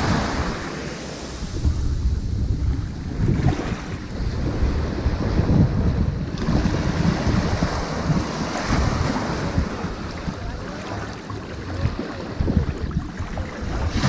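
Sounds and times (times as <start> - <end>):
surf washing onto beach: 0.0 - 14.0
wind buffeting microphone: 0.0 - 14.0.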